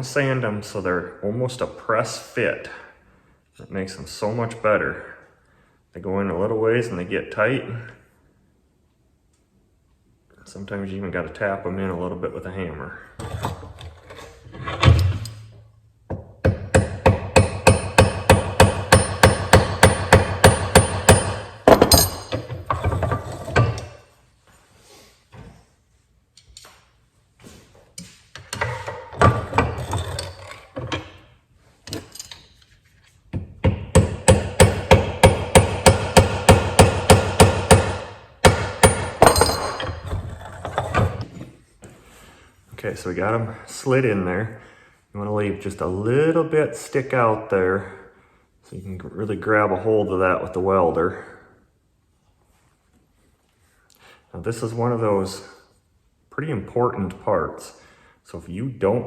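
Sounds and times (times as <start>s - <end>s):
hammer striking metal: 16.1s - 22.5s, 33.6s - 40.0s.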